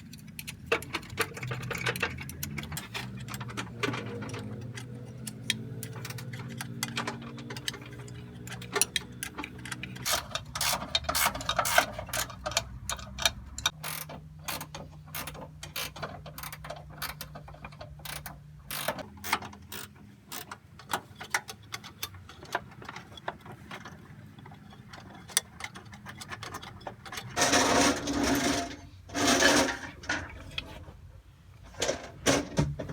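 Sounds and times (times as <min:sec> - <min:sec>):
mechanical clicking and ticking: 0:00.0 - 0:22.7.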